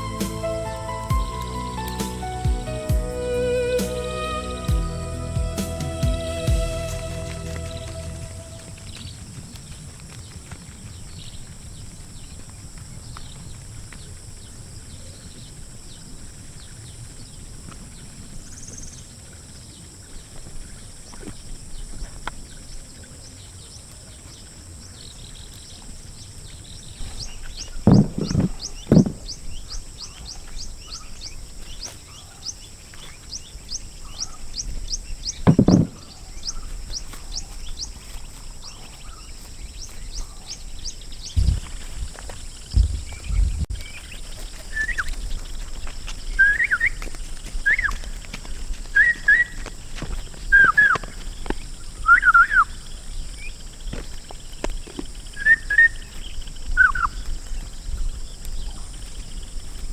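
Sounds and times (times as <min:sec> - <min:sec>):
heavy thumps: 0:27.9 - 0:29.4, 0:35.5 - 0:36.2, 0:41.4 - 0:44.2.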